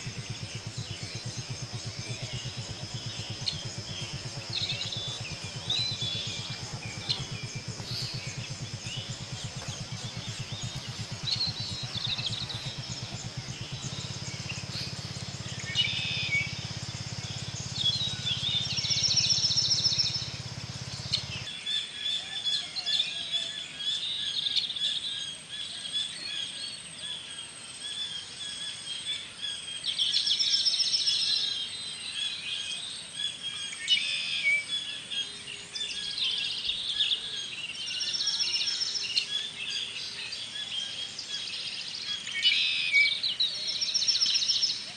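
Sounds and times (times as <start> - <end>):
fast rattling bird trill: 0.0 - 21.5
low pulsing hum: 0.0 - 21.5
wild birds chirping: 0.0 - 22.3, 28.2 - 44.9.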